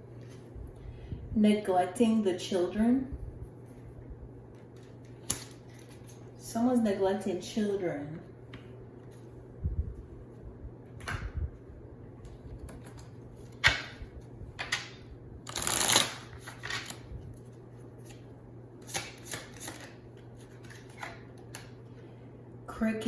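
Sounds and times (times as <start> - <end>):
faint low hum: 0.0 - 23.0
cards being shuffled: 14.6 - 21.8.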